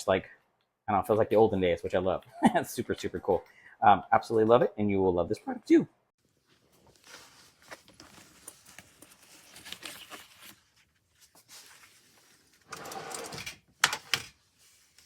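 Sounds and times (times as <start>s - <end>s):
rustling handling noise: 6.2s - 12.7s, 14.3s - 15.0s.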